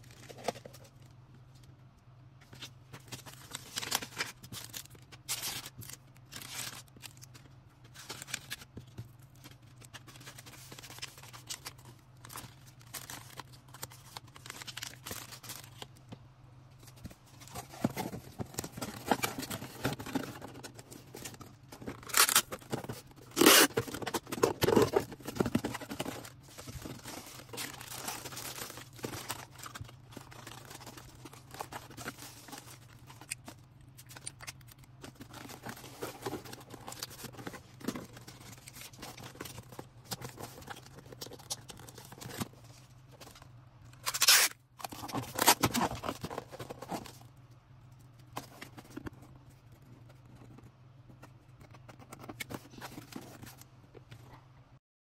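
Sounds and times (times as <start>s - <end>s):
small items being handled: 0.0s - 54.4s
plastic packaging rustling: 2.4s - 16.0s, 16.8s - 47.4s
tearing sounds: 23.3s - 23.9s, 44.0s - 45.6s.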